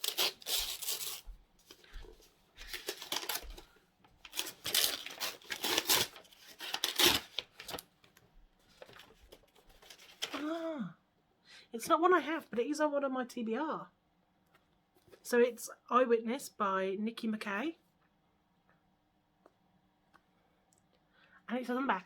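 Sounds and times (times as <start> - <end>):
paper wrapping tearing and crinkling: 0.0 - 2.0, 2.6 - 7.9, 8.7 - 10.6.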